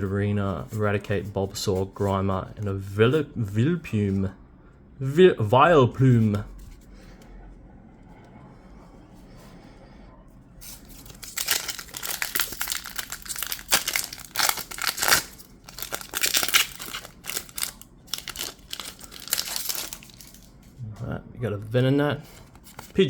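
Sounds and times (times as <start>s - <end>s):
foil wrapper crinkling and tearing: 10.6s - 20.6s.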